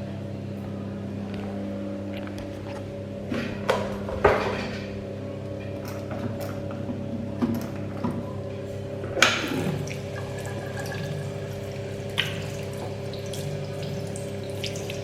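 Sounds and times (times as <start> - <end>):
steady hum: 0.0 - 15.0
water tap running: 9.2 - 15.0.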